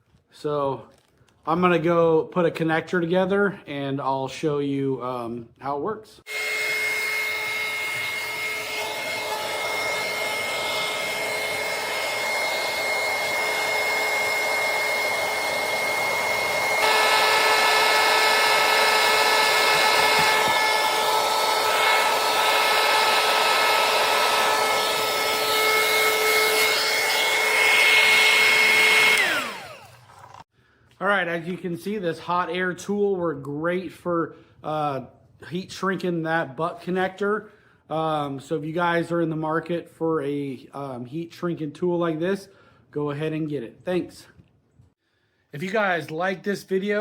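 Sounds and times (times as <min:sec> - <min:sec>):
heat gun fan whine: 0:06.3 - 0:30.4.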